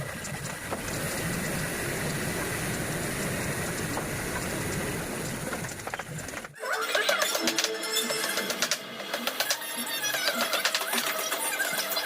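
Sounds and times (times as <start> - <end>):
music: 6.6 - 8.8.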